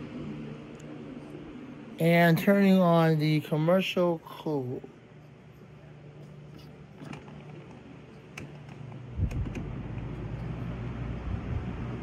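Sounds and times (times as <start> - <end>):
fan running with low rumble: 0.0 - 12.0
hum of other fans: 0.0 - 12.0
fan switch clicks: 8.3 - 10.1.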